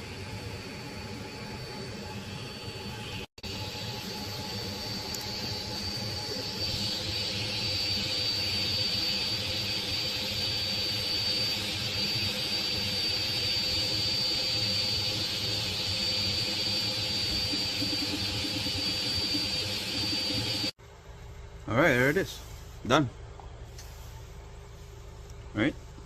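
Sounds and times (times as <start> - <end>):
high-pitched whine: 0.0 - 20.8
printer cooling fans whirring: 0.0 - 26.0.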